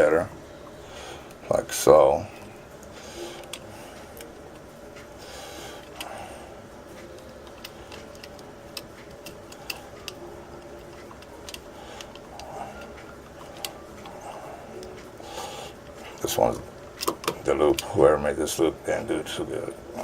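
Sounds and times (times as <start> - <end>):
wire and screwdriver clicking: 17.0 - 17.4.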